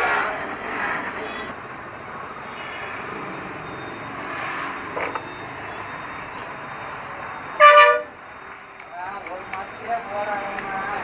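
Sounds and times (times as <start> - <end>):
road traffic noise: 0.0 - 11.0.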